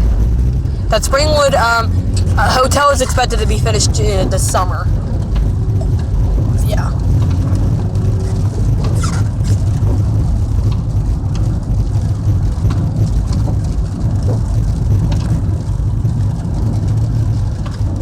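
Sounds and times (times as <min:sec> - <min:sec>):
car engine and tyres rumbling: 0:00.0 - 0:18.0.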